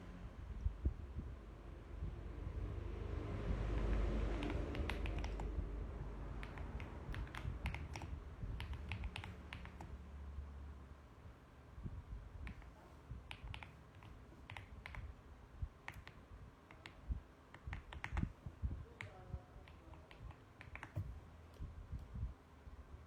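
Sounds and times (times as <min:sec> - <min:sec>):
mechanical keyboard typing: 0:03.7 - 0:05.6, 0:06.3 - 0:09.9, 0:12.5 - 0:15.1, 0:15.8 - 0:18.3, 0:19.0 - 0:21.1.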